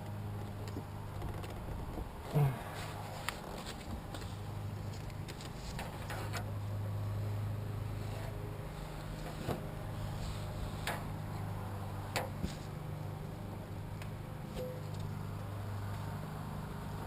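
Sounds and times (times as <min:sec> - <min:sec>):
steady low hum: 0:00.0 - 0:17.0
repair clicks and knocks: 0:12.1 - 0:12.6.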